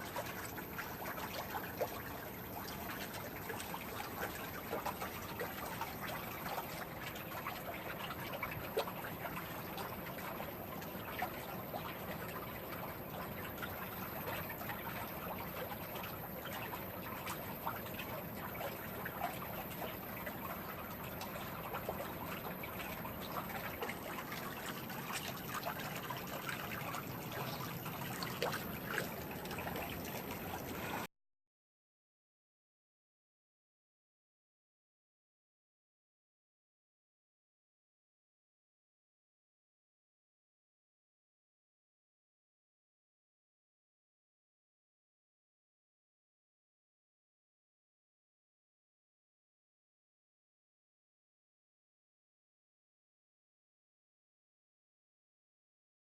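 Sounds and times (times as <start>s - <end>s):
pool water trickling and splashing: 0.0s - 31.1s.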